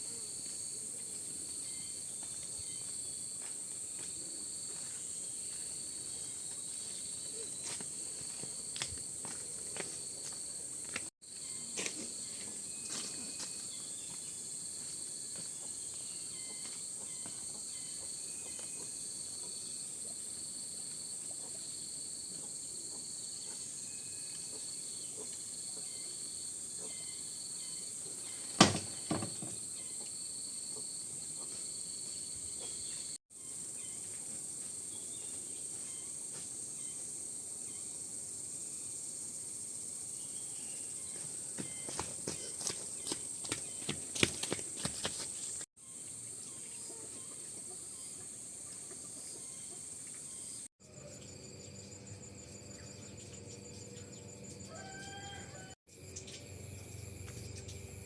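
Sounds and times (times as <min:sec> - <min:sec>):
insects droning: 0:00.0 - 0:58.0
sharp knock: 0:28.6 - 0:29.5.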